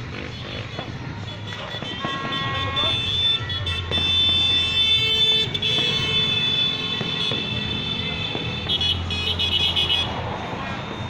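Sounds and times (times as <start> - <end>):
horns blaring high tones: 0.0 - 10.2
faint firecracker pops: 3.7 - 8.8.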